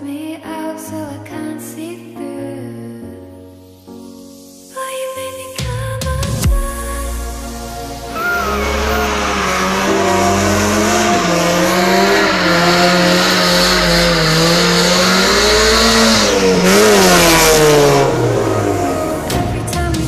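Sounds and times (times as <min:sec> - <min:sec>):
car engine at high revs: 0:07.4 - 0:19.7.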